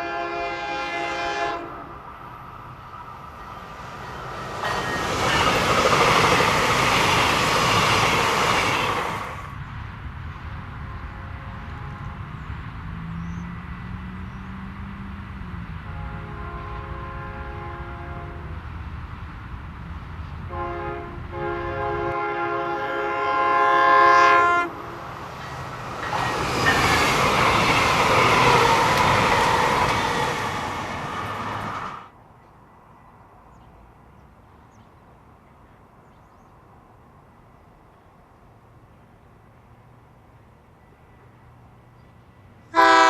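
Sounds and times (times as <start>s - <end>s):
train horn blasts: 0.0s - 2.0s, 10.9s - 12.3s, 15.8s - 18.6s, 20.5s - 25.0s, 42.7s - 43.0s
train passing with wheel noise: 0.0s - 43.0s.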